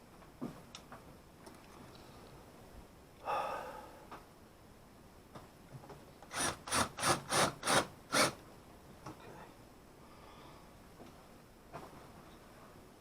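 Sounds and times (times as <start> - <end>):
rasping strokes on wood: 6.3 - 8.4.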